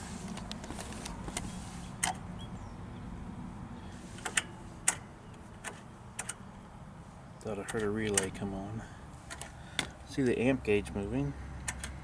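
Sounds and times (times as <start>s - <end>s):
ignition key switch and relay clicks: 4.2s - 6.4s, 7.5s - 8.4s, 11.6s - 12.0s.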